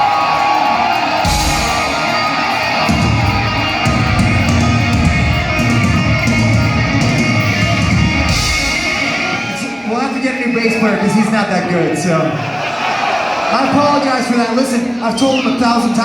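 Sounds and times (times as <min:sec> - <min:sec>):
heavy metal band playing: 0:00.0 - 0:12.2.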